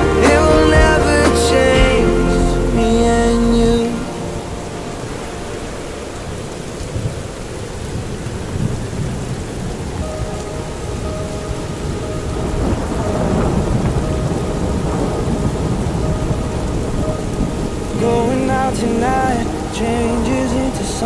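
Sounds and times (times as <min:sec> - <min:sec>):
steady rain falling: 0:00.0 - 0:21.0
low thunder rumble: 0:07.9 - 0:20.7.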